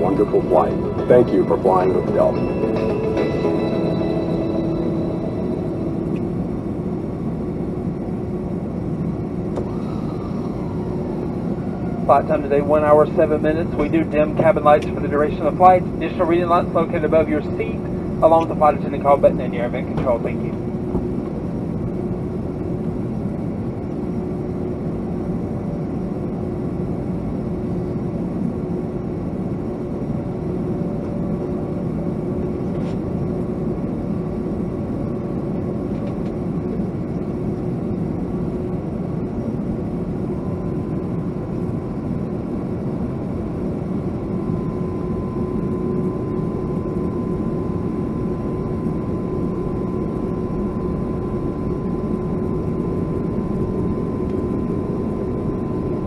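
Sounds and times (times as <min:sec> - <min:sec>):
higher steady tone: 0:00.0 - 0:08.6
jet engine hum in cabin: 0:00.0 - 0:56.0.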